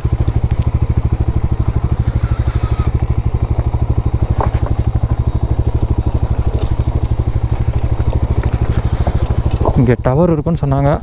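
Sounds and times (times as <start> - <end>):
motorcycle engine running: 0.0 - 11.0
light clicks and scrapes: 3.6 - 9.8.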